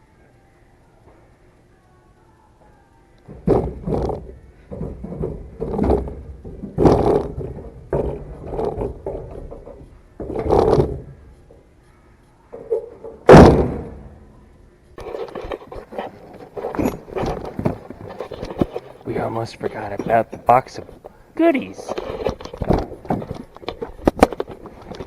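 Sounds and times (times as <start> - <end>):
heavy metal parts thudding: 13.0 - 14.3
loud slam: 13.3 - 14.1.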